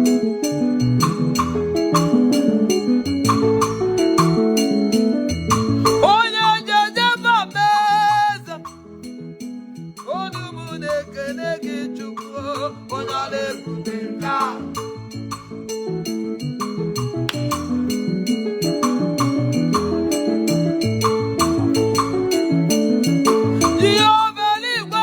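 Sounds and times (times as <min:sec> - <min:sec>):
instrumental backing with beat: 0:00.0 - 0:07.8, 0:08.6 - 0:25.0
person singing: 0:06.0 - 0:08.7, 0:10.1 - 0:14.9, 0:23.6 - 0:25.0.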